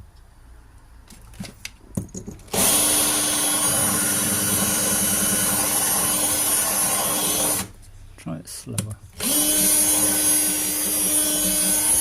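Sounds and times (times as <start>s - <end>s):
power drill grinding into glass: 2.5s - 7.7s, 9.2s - 12.0s.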